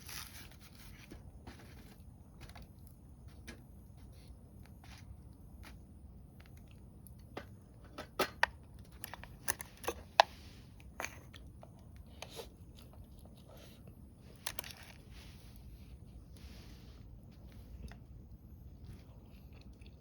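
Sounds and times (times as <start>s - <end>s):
low steady background: 0.0s - 20.0s.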